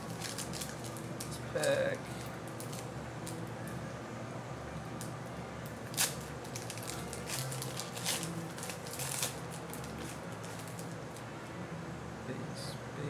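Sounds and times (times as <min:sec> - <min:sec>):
plastic wrapper tearing and crinkling: 0:00.0 - 0:03.4, 0:05.8 - 0:11.1.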